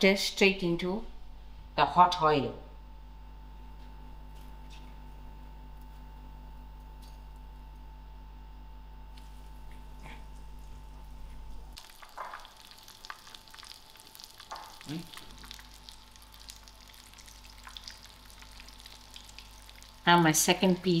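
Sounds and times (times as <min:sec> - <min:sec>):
chicken frying in hot oil: 0:11.7 - 0:21.0.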